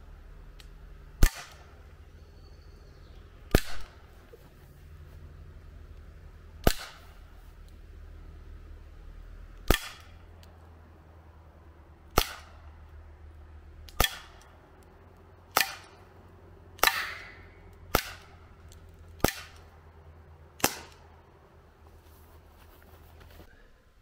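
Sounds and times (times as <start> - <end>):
bb revolver shots: 1.2 - 1.9, 3.5 - 4.1, 6.6 - 7.2, 9.6 - 10.2, 12.1 - 12.8, 13.8 - 14.5, 15.5 - 16.1, 16.8 - 18.5, 19.1 - 19.8, 20.6 - 21.1.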